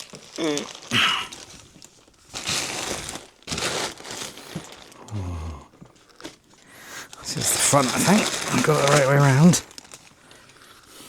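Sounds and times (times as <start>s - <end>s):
plastic bag crinkling: 0.0s - 11.0s.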